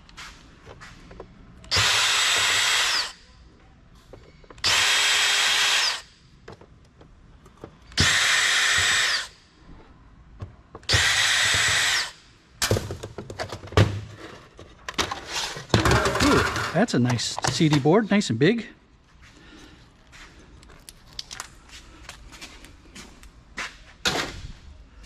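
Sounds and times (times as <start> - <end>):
cordless screwdriver running: 1.7 - 3.2, 4.6 - 6.0, 8.0 - 9.3, 10.9 - 12.1.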